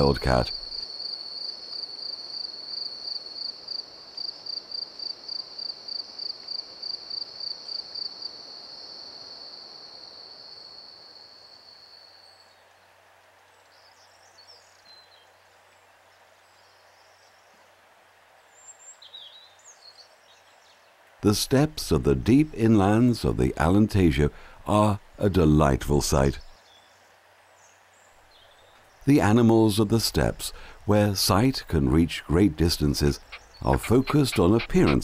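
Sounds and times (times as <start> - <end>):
crickets chirping: 0.0 - 12.9, 27.6 - 35.0
faint high bird chirps: 33.1 - 35.0.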